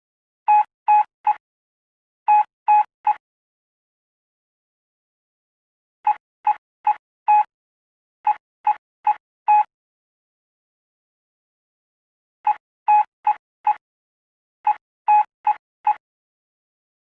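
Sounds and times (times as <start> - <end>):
morse code beeps: 0.5 - 1.4, 6.1 - 7.5, 8.3 - 9.7, 12.5 - 13.8, 14.7 - 16.0.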